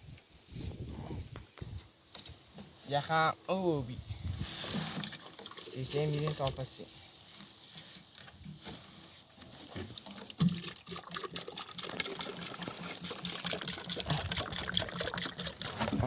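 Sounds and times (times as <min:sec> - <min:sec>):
trickling patter of pouring: 0:04.5 - 0:06.9, 0:09.2 - 0:16.0.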